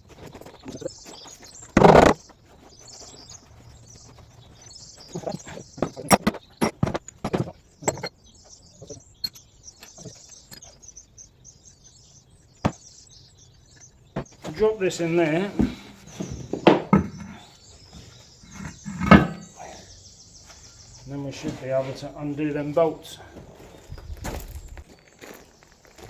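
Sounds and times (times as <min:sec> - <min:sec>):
tools and parts knocking: 0:05.8 - 0:08.1, 0:15.6 - 0:17.4, 0:18.6 - 0:19.5.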